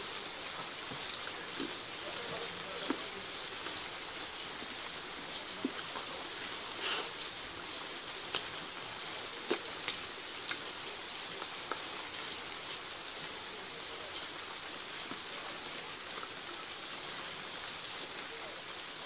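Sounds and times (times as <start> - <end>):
steady hiss: 1.4 - 8.1.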